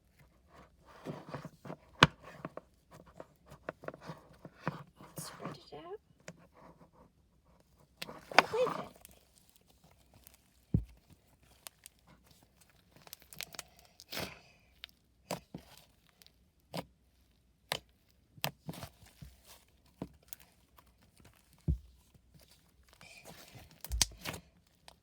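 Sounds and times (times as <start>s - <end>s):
slime popping and clicking: 23.8s - 24.3s.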